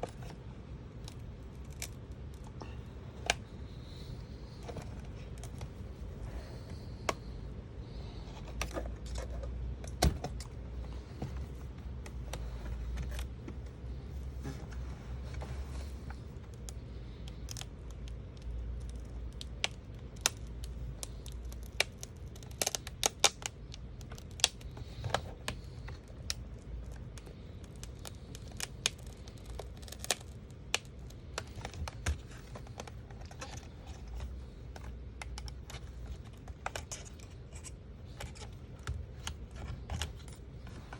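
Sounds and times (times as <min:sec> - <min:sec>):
low steady hum: 0:00.0 - 0:40.9
plastic and metal clicks and scrapes: 0:14.4 - 0:40.9.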